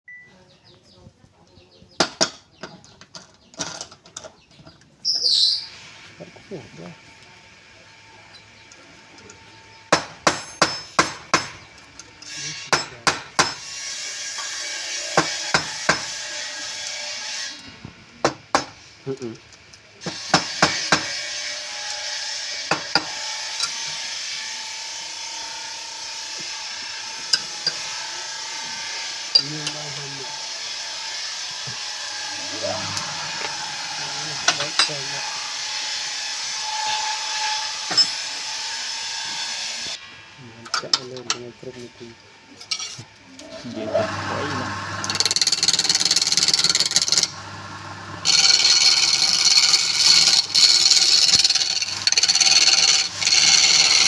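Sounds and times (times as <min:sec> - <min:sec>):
power tool hissing on wood: 0:43.9 - 0:54.0.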